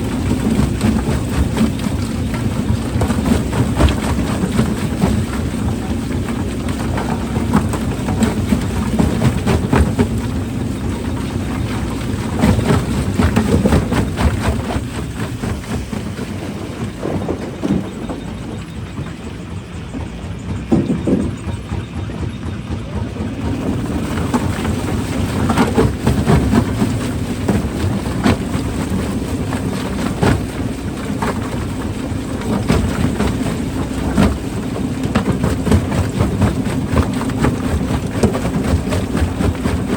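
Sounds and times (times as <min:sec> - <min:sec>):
rock crushing machinery hum: 0:00.0 - 0:39.9
rocks knocking and clattering: 0:12.4 - 0:19.1.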